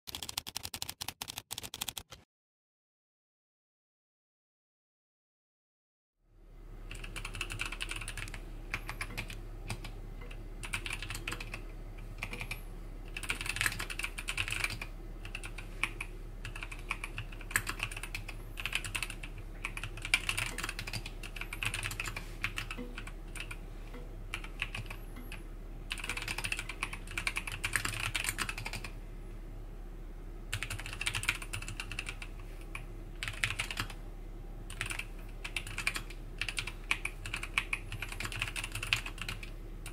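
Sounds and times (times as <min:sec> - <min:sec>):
mechanical keyboard typing: 0:00.1 - 0:02.2, 0:06.9 - 0:11.6, 0:12.2 - 0:23.6, 0:24.3 - 0:28.9, 0:30.5 - 0:34.0, 0:34.7 - 0:39.9
steady low hum: 0:06.2 - 0:39.9.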